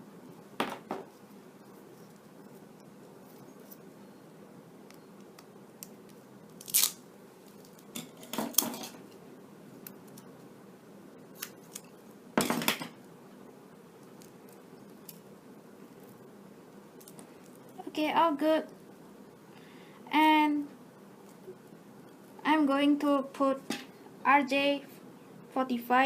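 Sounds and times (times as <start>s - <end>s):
scissors snipping electrical tape: 6.6s - 7.0s.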